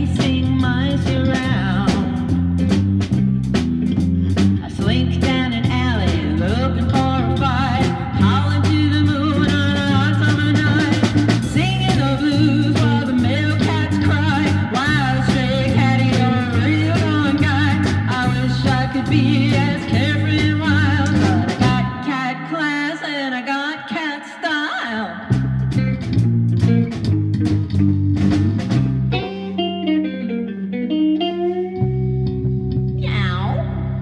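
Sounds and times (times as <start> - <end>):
band playing rockabilly: 0.0 - 22.0, 25.3 - 33.2
wavering lead guitar line: 0.0 - 22.9, 25.2 - 34.0.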